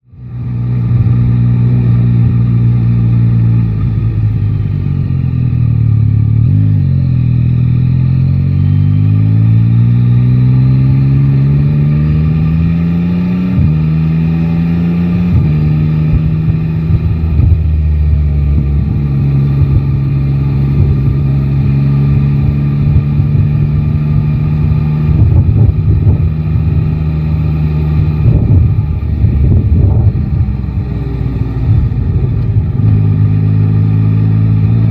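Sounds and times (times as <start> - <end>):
motorcycle engine accelerating: 0.0 - 34.9
wind rumble on microphone: 13.5 - 34.9.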